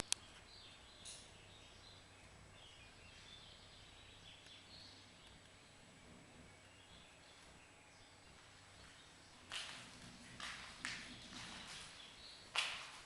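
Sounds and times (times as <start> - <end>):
faint bird chirps: 0.0 - 9.5.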